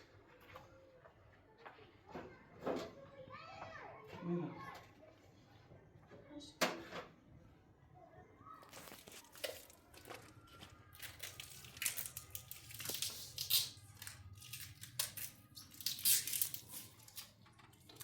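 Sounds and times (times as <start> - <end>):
material crinkling and rustling: 8.6 - 18.0.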